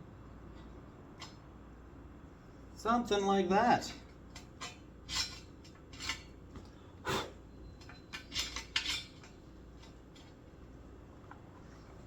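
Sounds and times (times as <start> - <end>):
metal tools clinking on steel pipe: 4.3 - 6.4, 7.8 - 10.3.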